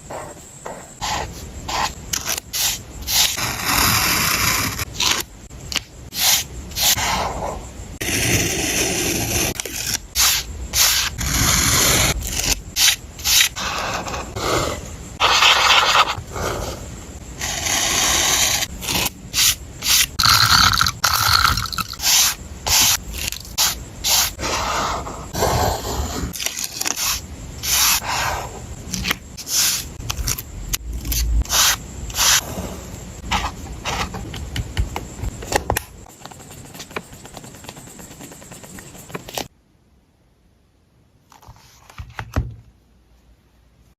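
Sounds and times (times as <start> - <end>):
paper scraping and rubbing: 8.0 - 16.8, 17.4 - 30.4, 31.0 - 34.3, 36.0 - 39.5.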